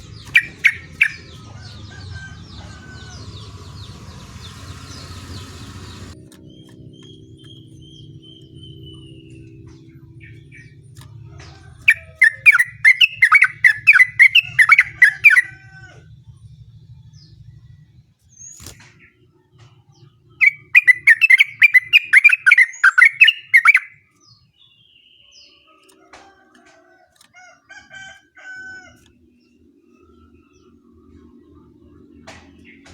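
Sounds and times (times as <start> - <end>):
bird chattering song: 0.0 - 10.9, 11.8 - 15.5, 20.3 - 25.8.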